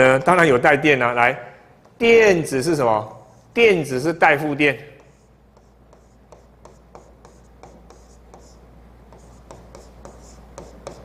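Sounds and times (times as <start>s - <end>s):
low steady hum: 0.0s - 11.0s
pen scratching on paper: 5.0s - 11.0s.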